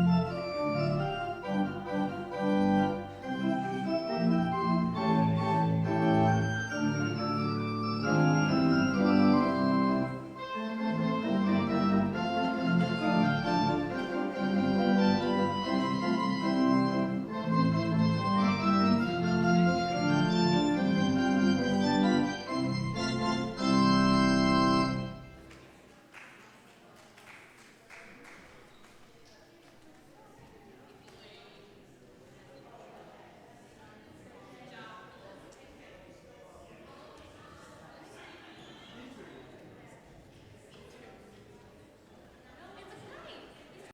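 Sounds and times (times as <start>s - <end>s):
church organ chords: 0.0s - 25.5s.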